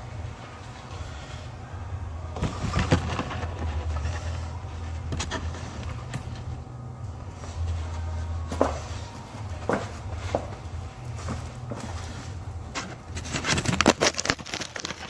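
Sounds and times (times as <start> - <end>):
steady low hum: 0.0 - 15.0.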